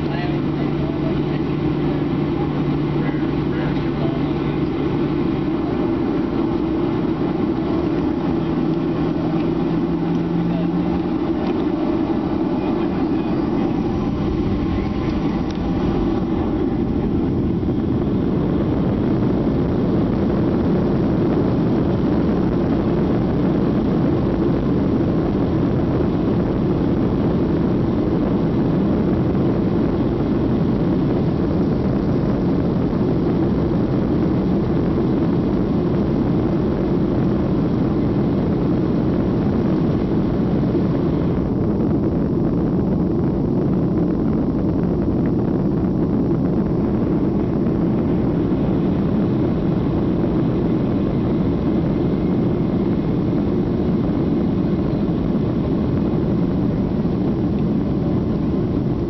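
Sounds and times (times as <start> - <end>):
faint tones: 0.0 - 18.8
jet engines rushing: 0.0 - 59.0.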